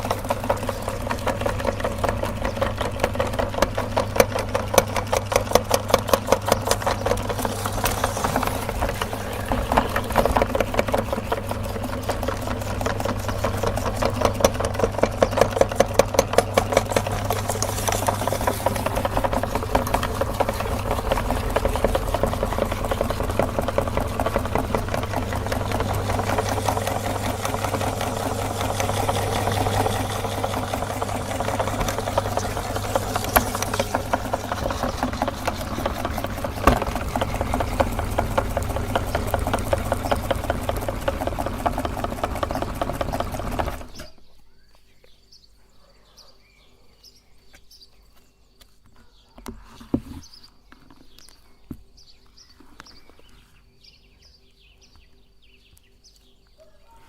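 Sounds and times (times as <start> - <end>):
electric meat grinder running: 0.0 - 44.2.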